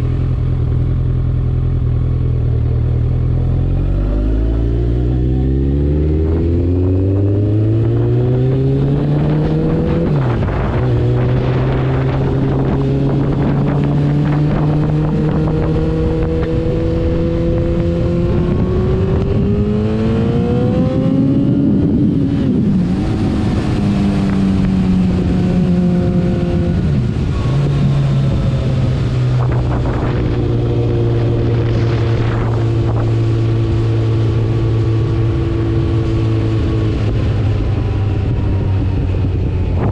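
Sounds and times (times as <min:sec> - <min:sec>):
motorcycle engine accelerating: 0:00.0 - 0:39.9.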